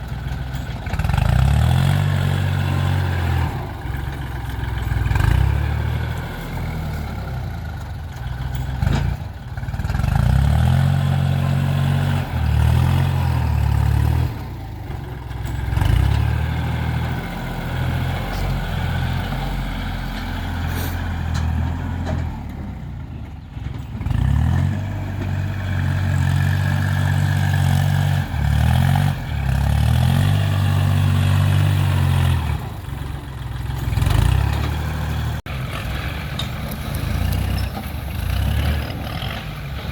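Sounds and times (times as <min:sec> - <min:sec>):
heavy diesel engine working: 0:00.0 - 0:39.9.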